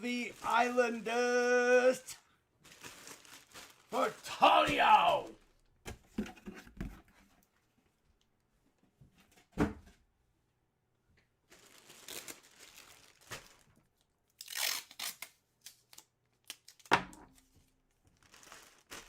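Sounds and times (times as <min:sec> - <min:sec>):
plastic packaging crinkling and tearing: 0:02.6 - 0:05.6, 0:11.5 - 0:17.5, 0:18.1 - 0:19.0.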